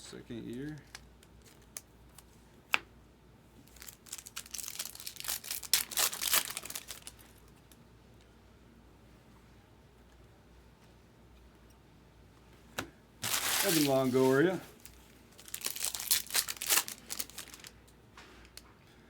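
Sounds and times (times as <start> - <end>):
card pack wrapper crinkling and tearing: 0.5 - 2.3, 3.6 - 7.5, 13.2 - 17.8.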